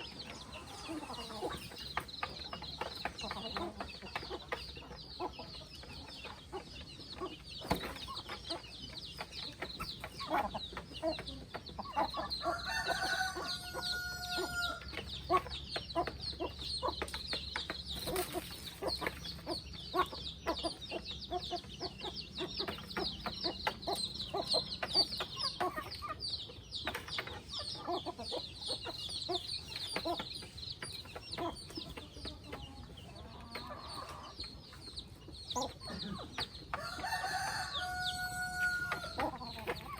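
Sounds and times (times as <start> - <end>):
chickens clucking: 0.0 - 39.9
rooster crowing: 12.5 - 14.8, 36.8 - 39.2.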